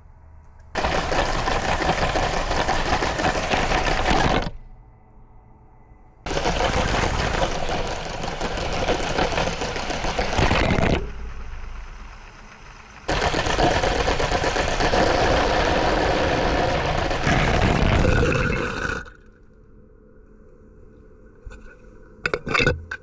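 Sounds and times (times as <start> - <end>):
toy train rattling on plastic track: 0.8 - 4.5, 6.3 - 10.8, 13.1 - 17.3.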